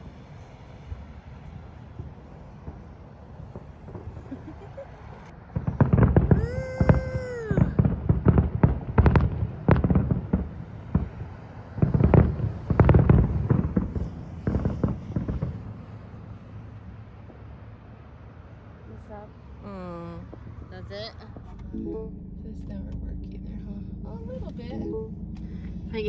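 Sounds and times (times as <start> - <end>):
fireworks exploding: 2.0 - 15.8
firework whistle: 5.8 - 7.9.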